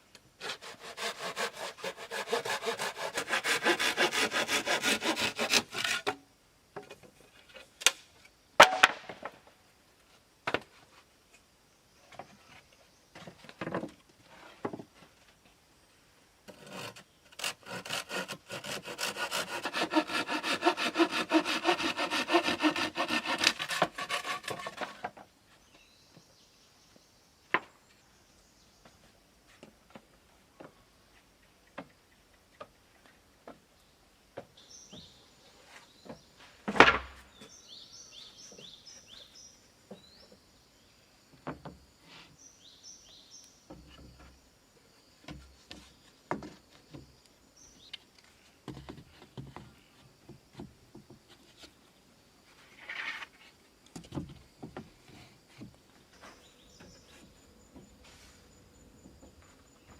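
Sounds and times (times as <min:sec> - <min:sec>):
bird chirping: 0:37.3 - 0:41.2, 0:42.3 - 0:44.4, 0:55.8 - 0:59.9.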